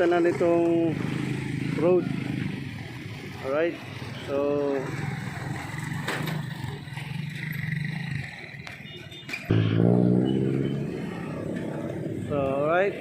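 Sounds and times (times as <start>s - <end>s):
vehicle engine humming: 6.5s - 12.6s
loud engine drone: 9.5s - 12.2s.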